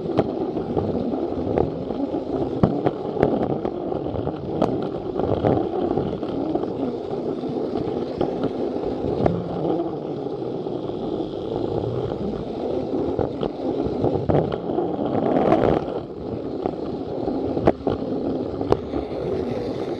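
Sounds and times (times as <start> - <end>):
toy train motor whirring: 18.1 - 19.9.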